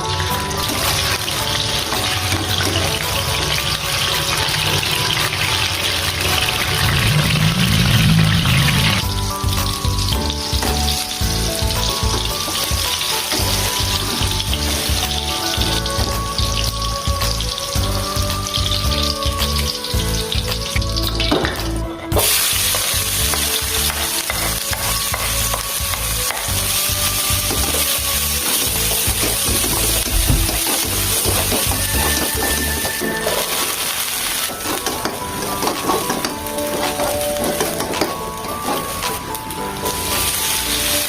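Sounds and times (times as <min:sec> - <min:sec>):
background music: 0:00.0 - 0:41.0
food sizzling in a pan: 0:00.0 - 0:41.0
stirring in a pan: 0:22.5 - 0:41.0.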